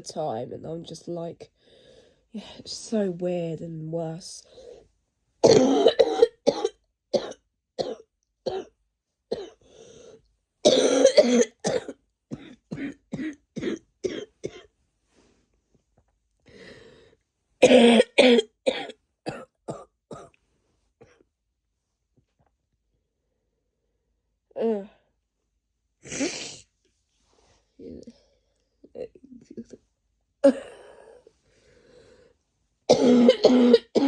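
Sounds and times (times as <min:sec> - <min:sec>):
person coughing: 0:05.4 - 0:08.7, 0:10.7 - 0:14.6, 0:17.6 - 0:20.3, 0:30.4 - 0:31.2, 0:32.9 - 0:34.0.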